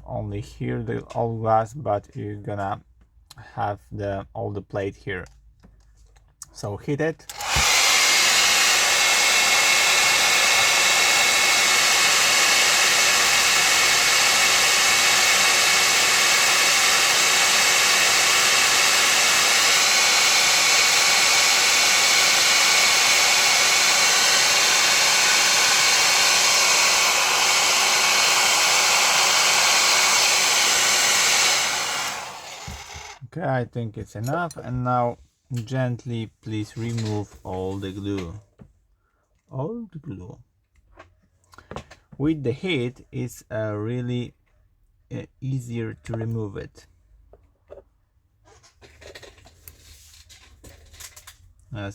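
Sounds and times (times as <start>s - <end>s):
hot-air blower running: 7.3s - 33.2s.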